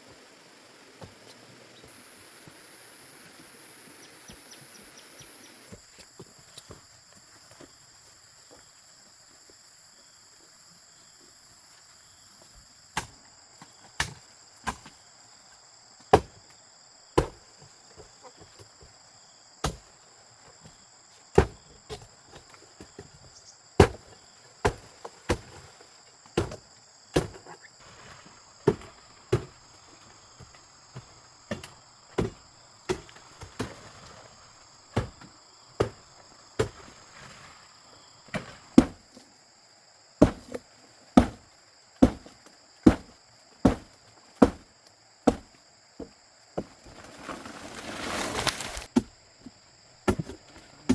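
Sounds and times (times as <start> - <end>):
insects shrilling: 0.0 - 5.7, 46.8 - 48.9
sharp chopping strikes: 41.2 - 41.4.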